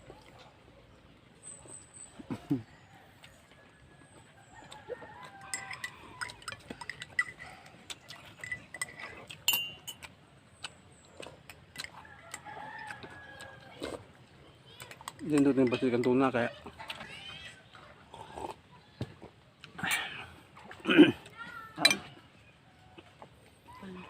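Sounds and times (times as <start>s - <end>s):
utensils clinking on a plate: 5.2s - 10.1s, 14.8s - 16.4s, 21.8s - 22.2s.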